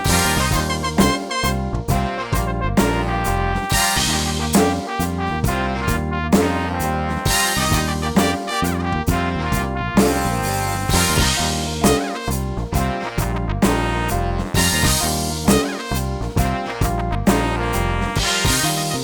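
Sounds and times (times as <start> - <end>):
electronic drum beat: 0.0 - 19.0
synth bass line: 0.0 - 19.0
synthesizer brass lead: 0.0 - 19.0.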